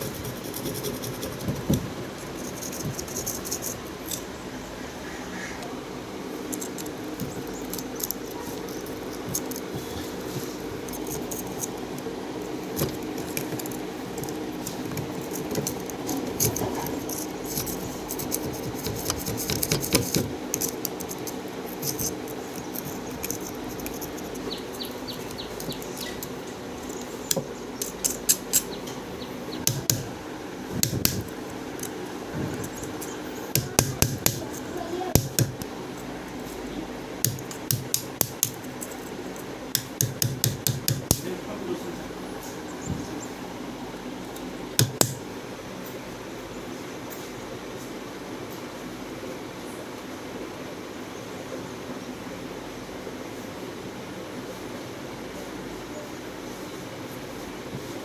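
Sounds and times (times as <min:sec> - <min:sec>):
ceiling fan humming: 0:00.0 - 0:58.0.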